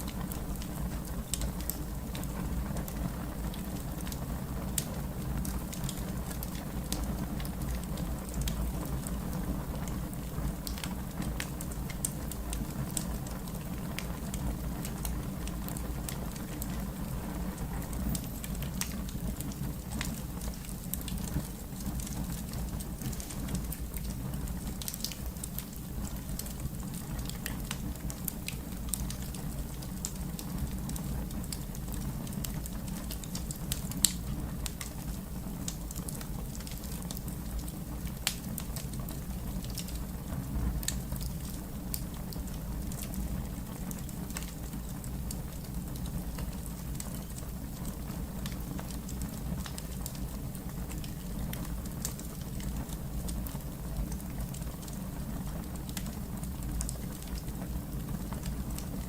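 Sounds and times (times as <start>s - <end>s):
fire crackling and popping: 0.0s - 59.0s.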